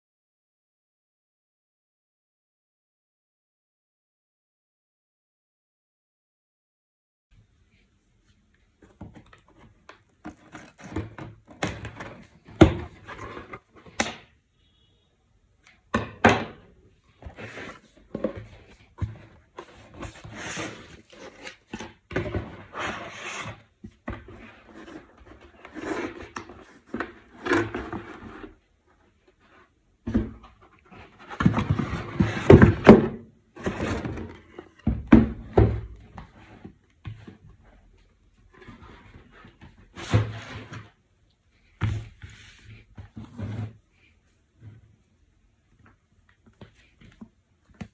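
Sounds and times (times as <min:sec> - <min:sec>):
cardboard and packaging rustling: 0:08.2 - 0:14.1, 0:17.0 - 0:45.0
box knocks and thuds: 0:31.3 - 0:37.3.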